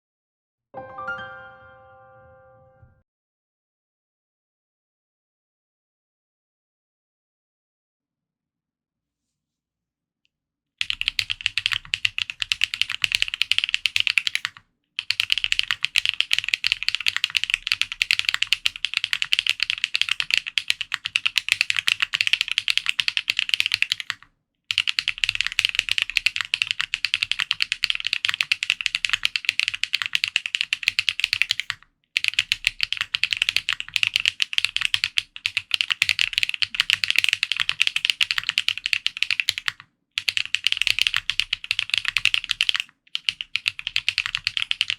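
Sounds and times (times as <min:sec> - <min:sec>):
fast mechanical keyboard typing: 0:10.8 - 0:44.9.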